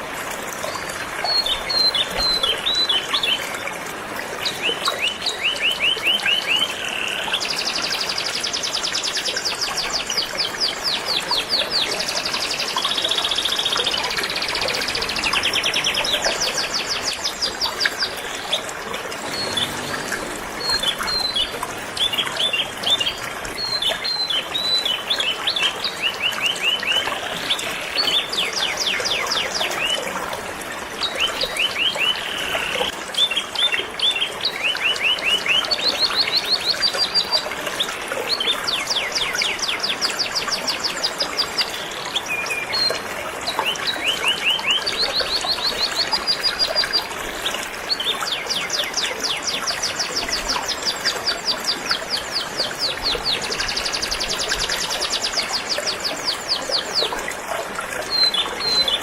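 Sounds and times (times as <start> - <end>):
flowing river water: 0.0 - 59.0
canaries singing: 10.0 - 30.0.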